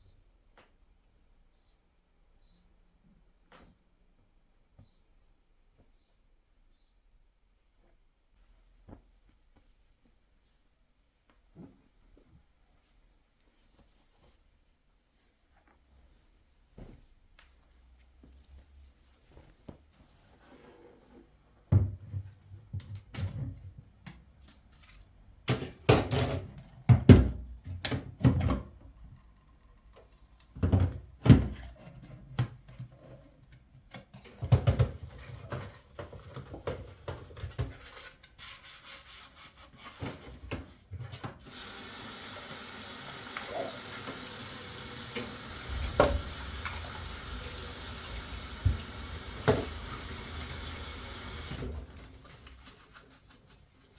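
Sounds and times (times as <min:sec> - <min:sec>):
water running from tap: 0:41.4 - 0:52.3.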